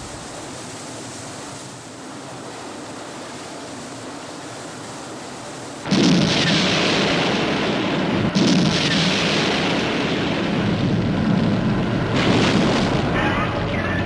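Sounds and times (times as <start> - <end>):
explosions rumbling: 5.9 - 14.0.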